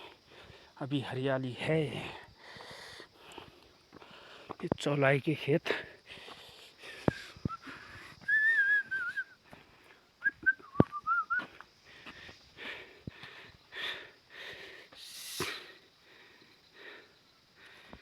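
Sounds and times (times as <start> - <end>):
person whistling: 7.5 - 9.4, 10.2 - 11.5.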